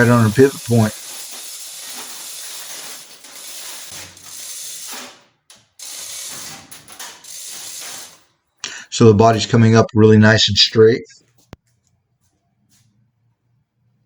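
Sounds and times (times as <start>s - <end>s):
chain hoist ratcheting rattle: 0.0s - 8.6s.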